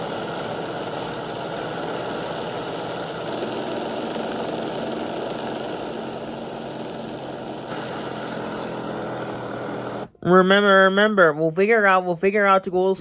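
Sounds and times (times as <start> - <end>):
propeller plane engine: 0.0 - 10.2.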